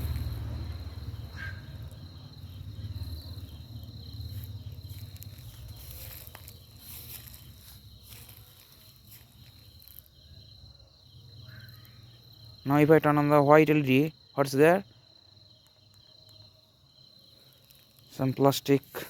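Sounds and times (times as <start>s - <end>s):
low rumble on microphone: 0.0s - 6.5s
crickets chirping: 0.0s - 19.0s
footsteps: 1.8s - 10.1s.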